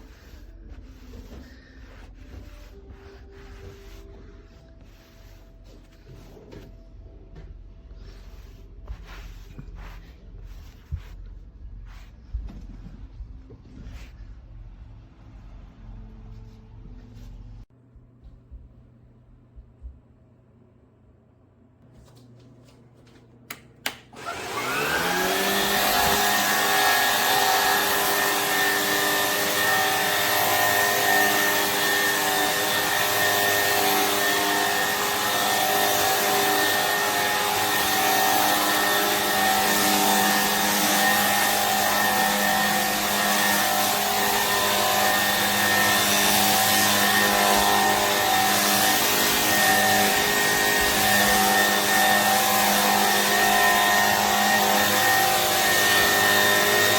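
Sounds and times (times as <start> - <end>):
stick vacuum motor whining: 23.8 - 56.9.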